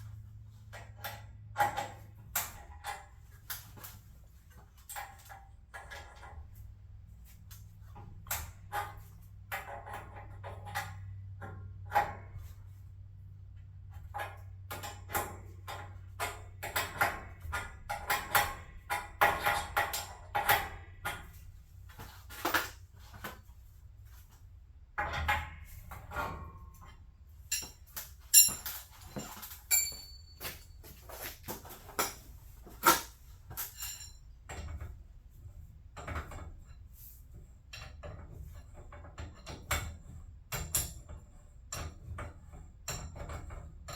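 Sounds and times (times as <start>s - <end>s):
metal tools clinking and knocking: 26.1s - 34.3s.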